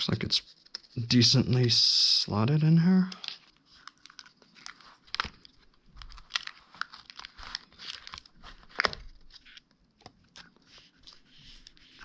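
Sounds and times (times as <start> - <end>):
plastic film crinkling: 3.0 - 12.0.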